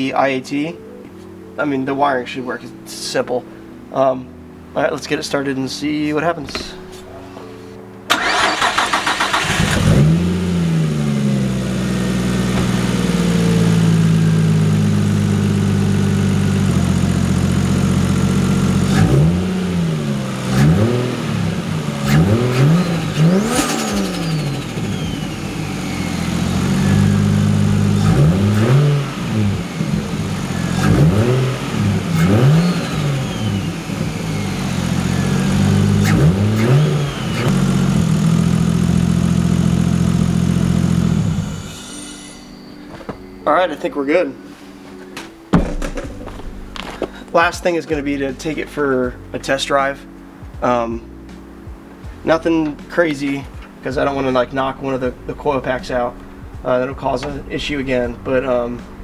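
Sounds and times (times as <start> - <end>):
engine cranking on starter: 8.1 - 41.8
engine idling with throttle blips: 8.1 - 41.8.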